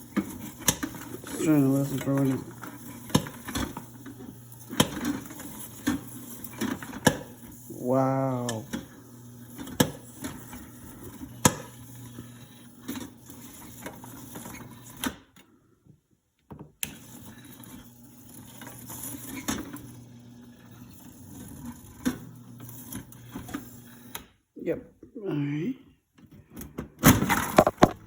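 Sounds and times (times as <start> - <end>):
popcorn machine motor humming: 0.0 - 15.1, 16.8 - 24.2, 27.1 - 28.0
popcorn kernels popping: 27.4 - 28.0.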